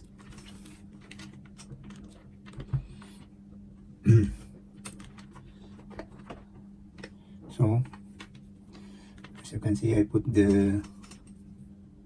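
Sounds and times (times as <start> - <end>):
low steady hum: 0.0 - 12.0
multimeter leads clicking and rattling: 9.1 - 11.4.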